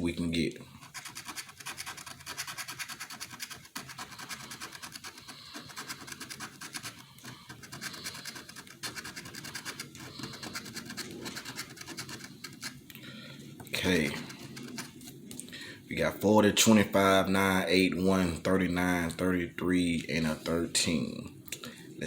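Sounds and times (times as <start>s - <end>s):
scratching a scratch-off ticket: 0.8s - 12.9s, 13.7s - 15.2s.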